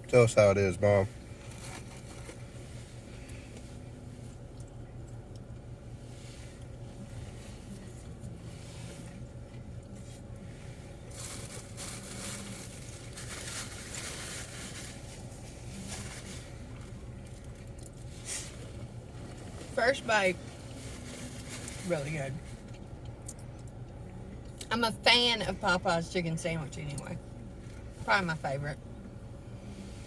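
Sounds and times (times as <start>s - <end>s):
steady low hum: 0.0s - 30.0s
paper wrapper rustling: 11.1s - 15.2s.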